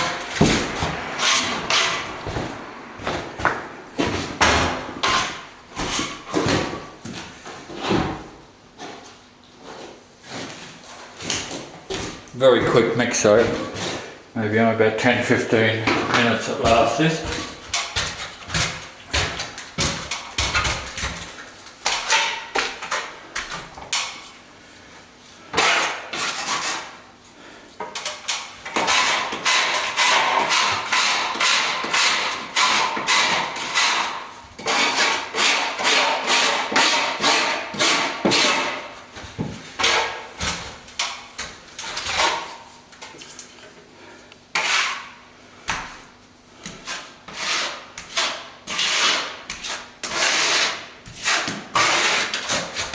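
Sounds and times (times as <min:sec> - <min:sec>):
plastering tool scraping: 0:00.0 - 0:08.0, 0:25.4 - 0:27.0, 0:27.8 - 0:43.2, 0:44.5 - 0:45.2, 0:46.6 - 0:52.9.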